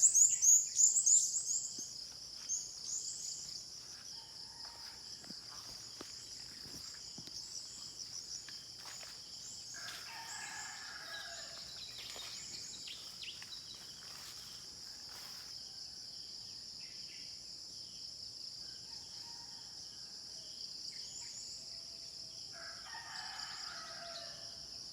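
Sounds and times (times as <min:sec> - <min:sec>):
insects droning: 0:00.0 - 0:19.4
rooster crowing: 0:04.2 - 0:05.6, 0:09.7 - 0:12.3, 0:22.6 - 0:24.5.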